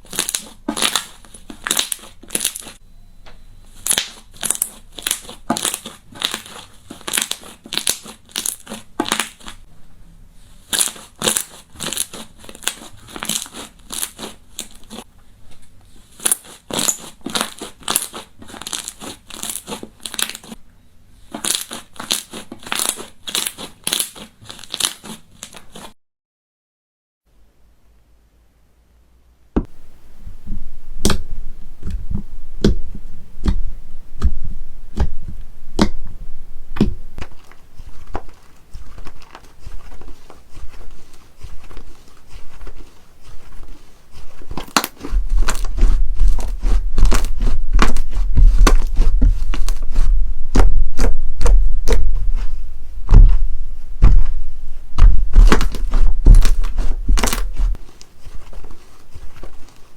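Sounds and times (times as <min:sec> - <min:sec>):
slime clicking and popping: 0:00.1 - 0:02.8, 0:03.8 - 0:09.6, 0:31.0 - 0:32.0, 0:55.0 - 0:57.5
low thud: 0:29.6 - 0:37.2, 0:50.2 - 0:57.7.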